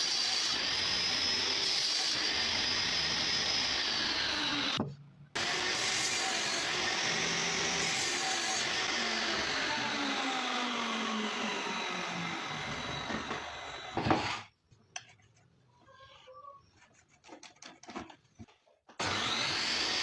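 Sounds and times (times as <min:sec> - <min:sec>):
table saw cutting wood: 0:00.0 - 0:04.8, 0:05.4 - 0:14.5, 0:19.0 - 0:20.0.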